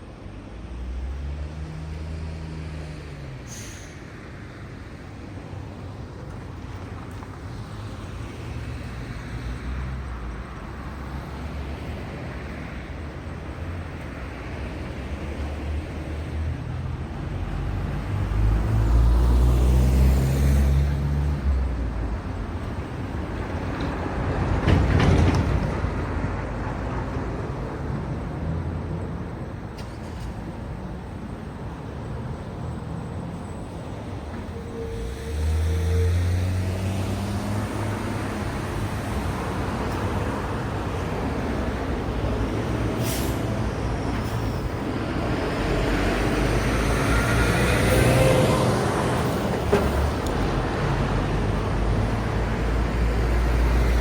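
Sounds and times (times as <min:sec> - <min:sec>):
road traffic: 0:00.0 - 0:54.0
air brake hiss: 0:03.4 - 0:04.2, 0:42.9 - 0:43.6
brief squeal: 0:03.5 - 0:04.0, 0:34.4 - 0:36.5
vehicle engine drone: 0:25.6 - 0:54.0
vehicle passing with rush of noise: 0:30.4 - 0:54.0.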